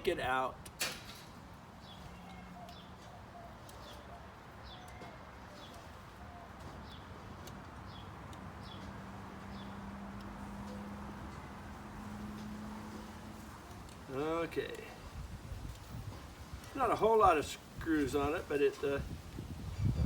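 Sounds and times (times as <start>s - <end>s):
bird chirping: 1.8s - 7.2s, 7.8s - 9.9s.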